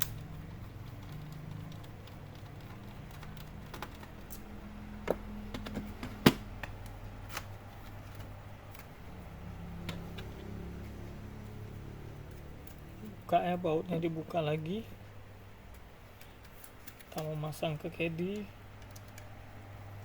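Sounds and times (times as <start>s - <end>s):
laptop parts clicking and knocking: 0.0s - 9.0s, 9.7s - 10.6s, 15.6s - 19.7s
steady low hum: 0.0s - 20.0s.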